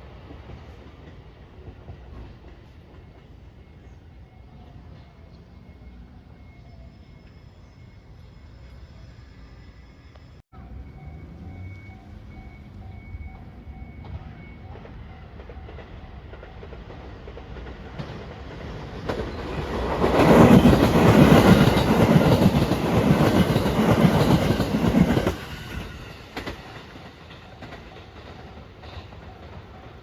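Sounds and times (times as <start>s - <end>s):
train wheels clacking over rails: 13.4s - 30.0s.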